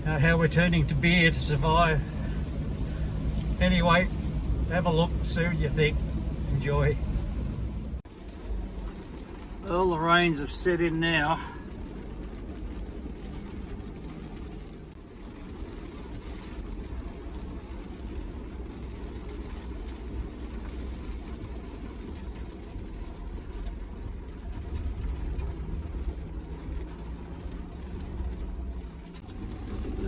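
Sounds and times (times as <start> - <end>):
car engine and road rumble: 0.0 - 30.0.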